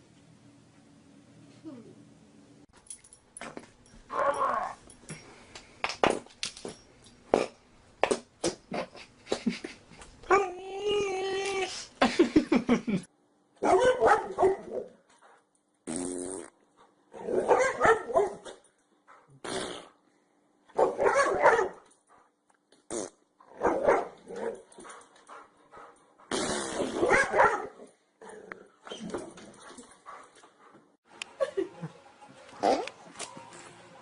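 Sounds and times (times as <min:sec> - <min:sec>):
dogs barking and growling: 0:04.1 - 0:04.8, 0:13.6 - 0:15.0, 0:17.1 - 0:19.4, 0:20.7 - 0:21.8, 0:23.4 - 0:30.8, 0:32.5 - 0:33.0.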